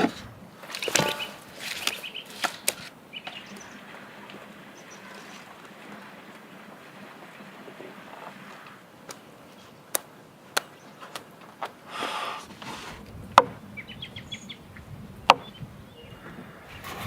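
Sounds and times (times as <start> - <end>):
bird chirping: 0.7 - 3.9, 13.4 - 16.4
sharp knocks or clicks: 0.8 - 1.5.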